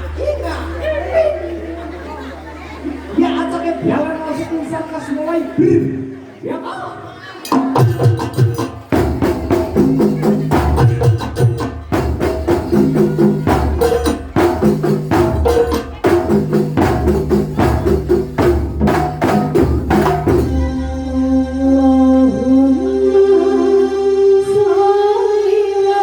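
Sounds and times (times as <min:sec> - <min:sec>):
hand drums playing: 0:07.5 - 0:22.6
deep drum strokes: 0:07.8 - 0:21.2
steady pitched tones: 0:08.0 - 0:26.0.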